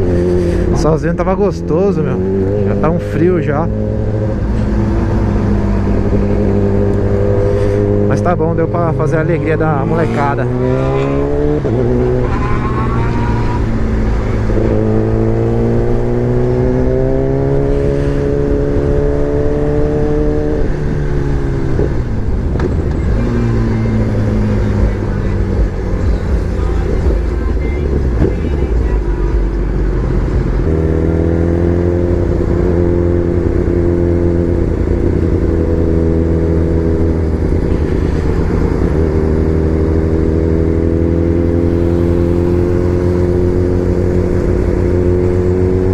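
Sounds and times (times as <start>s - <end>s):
motorcycle engine running: 18.4s - 45.9s.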